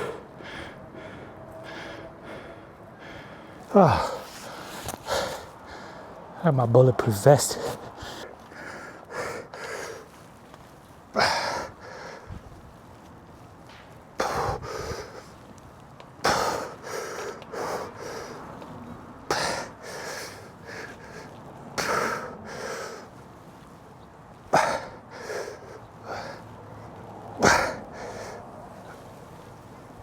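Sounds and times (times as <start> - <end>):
person breathing hard: 0.0 - 6.3, 7.5 - 10.3, 11.2 - 12.5, 14.2 - 15.5, 16.2 - 23.2, 24.5 - 29.4.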